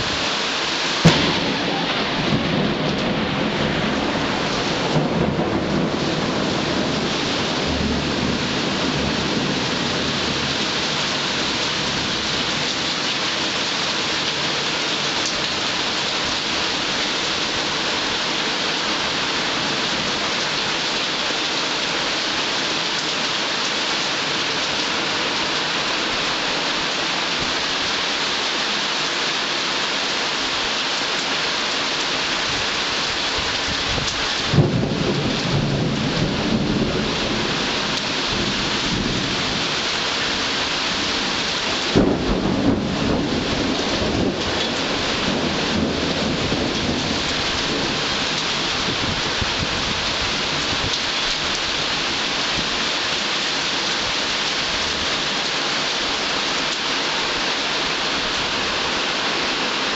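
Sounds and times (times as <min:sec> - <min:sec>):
heavy rain pouring: 0:00.0 - 0:59.9
sudden thunderclap: 0:01.0 - 0:10.4, 0:34.0 - 0:37.2, 0:41.9 - 0:44.6
low thunder rumble: 0:01.0 - 0:12.6, 0:33.5 - 0:39.7, 0:41.2 - 0:50.9.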